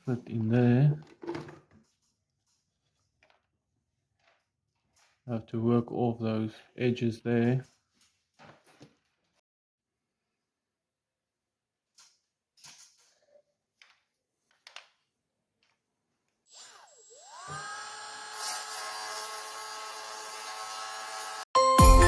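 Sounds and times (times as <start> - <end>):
rotary tool whining: 16.5 - 21.5.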